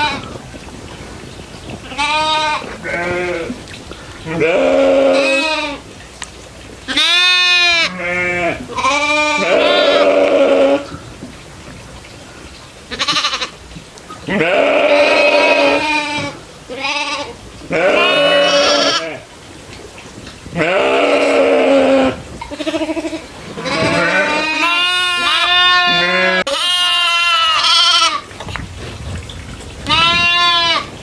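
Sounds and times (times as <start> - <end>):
goats bleating: 0.0 - 0.3, 1.8 - 3.6, 4.2 - 5.8, 6.9 - 11.0, 12.9 - 13.6, 14.3 - 19.3, 20.5 - 28.3, 29.8 - 31.0.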